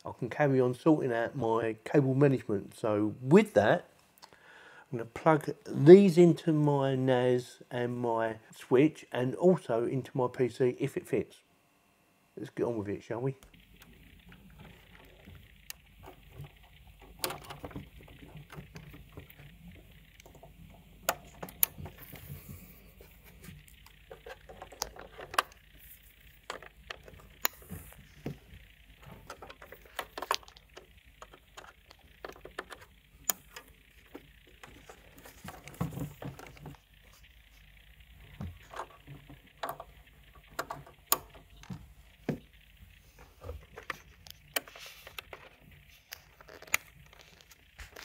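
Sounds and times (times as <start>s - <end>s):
cable rustling: 13.7s - 39.9s.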